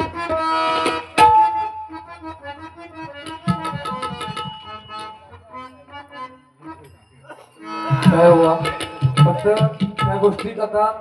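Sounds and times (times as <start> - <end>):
harmonium chords: 0.0 - 11.0
sharp percussion strike: 1.2 - 2.0, 3.2 - 5.3, 6.8 - 10.6.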